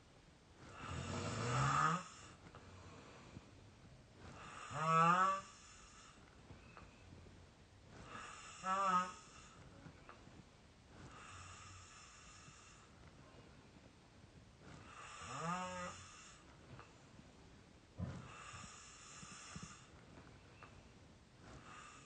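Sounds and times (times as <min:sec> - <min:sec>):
squeaky snoring: 0:00.7 - 0:02.4, 0:04.3 - 0:06.2, 0:08.0 - 0:09.6, 0:14.8 - 0:16.4, 0:18.0 - 0:19.9, 0:21.6 - 0:22.0.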